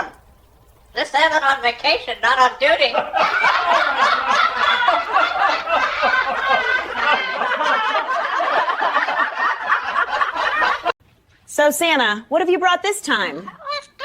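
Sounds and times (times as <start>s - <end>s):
people laughing: 2.0s - 11.0s, 13.3s - 14.0s.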